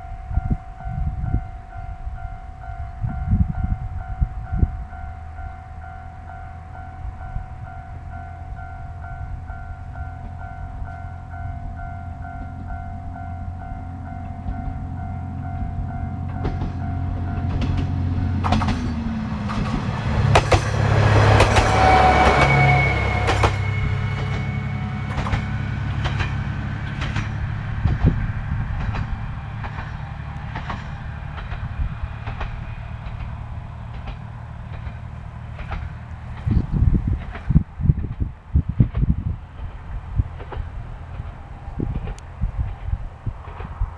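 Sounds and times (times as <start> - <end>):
pulsing crossing alarm tone: 0.0 - 19.1, 20.8 - 26.1
diesel railcar engine droning: 0.0 - 43.9
wheels clicking over rail joints: 9.8 - 22.6, 23.2 - 43.9.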